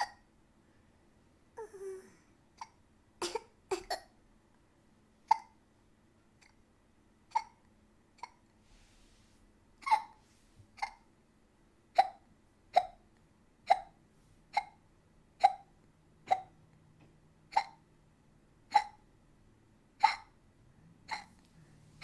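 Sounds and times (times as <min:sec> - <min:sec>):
woman hiccuping: 0:00.0 - 0:00.2, 0:01.6 - 0:04.1, 0:05.3 - 0:05.6, 0:07.3 - 0:07.6, 0:13.7 - 0:14.0, 0:17.5 - 0:17.8, 0:20.0 - 0:20.3, 0:21.1 - 0:21.3.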